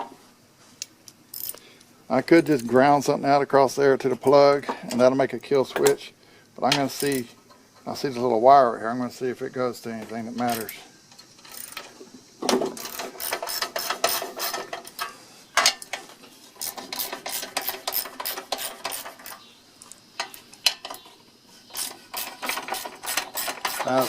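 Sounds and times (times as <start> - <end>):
tools clicking and scraping on metal: 0.8 - 2.8, 6.7 - 8.3, 10.1 - 12.0, 12.8 - 24.0.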